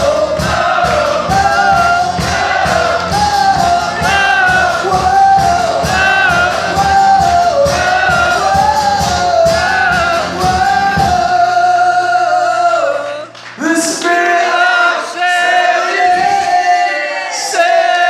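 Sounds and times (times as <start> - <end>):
steady drum beat: 0.0 - 11.8
live rock band playing: 0.0 - 11.9
wordless sung melody: 0.0 - 18.0.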